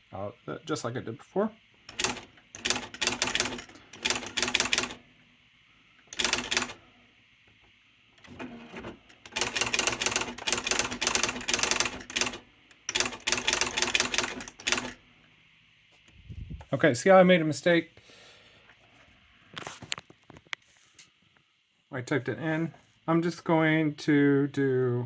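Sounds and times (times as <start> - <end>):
electric typewriter clacking: 1.9 - 5.0, 6.1 - 6.8, 8.2 - 15.0.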